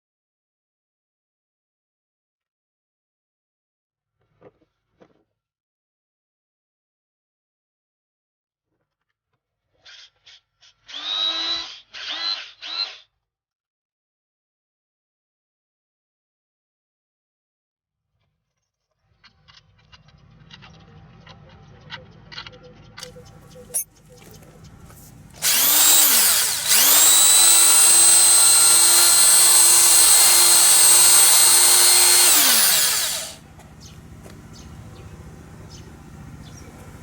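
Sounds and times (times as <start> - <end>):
electric drill whirring: 25.4 - 33.4.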